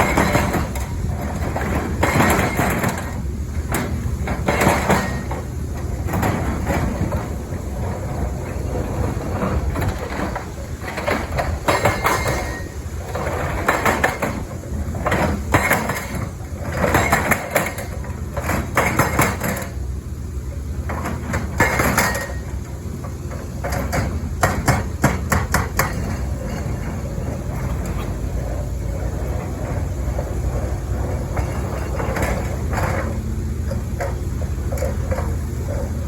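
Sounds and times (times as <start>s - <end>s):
hydraulic breaker hammering: 0.0s - 7.6s, 9.5s - 19.8s, 23.4s - 28.4s
diesel engine running: 0.0s - 36.0s.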